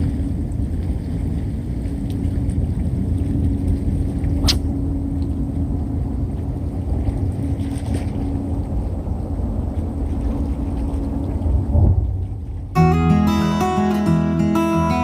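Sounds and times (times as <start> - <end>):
faint even hum: 0.0 - 12.8
steady low rumble: 0.0 - 15.0
sharp snap: 4.4 - 4.7.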